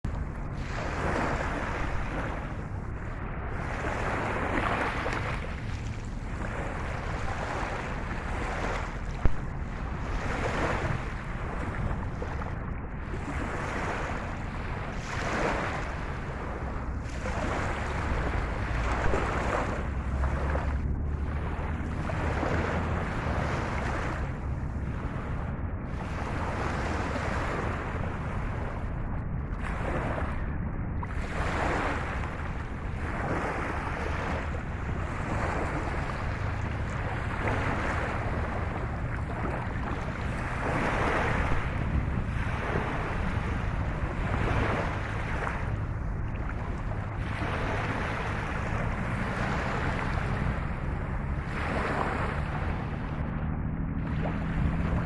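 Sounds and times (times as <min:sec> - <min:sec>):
rushing water: 0:00.0 - 0:29.0, 0:30.3 - 0:55.0
wind noise on microphone: 0:00.0 - 0:55.0.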